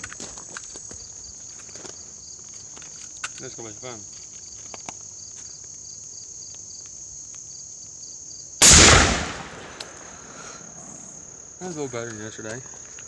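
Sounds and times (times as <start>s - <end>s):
crickets chirping: 0.0s - 13.0s
shotgun shot: 8.6s - 10.4s.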